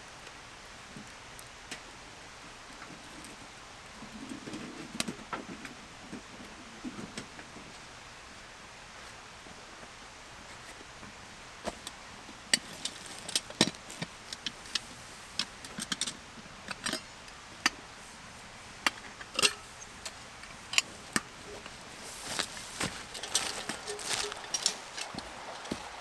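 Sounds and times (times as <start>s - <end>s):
faint steady background noise: 0.0s - 26.0s
sharp clicks and light knocks: 11.7s - 17.8s, 18.8s - 26.0s.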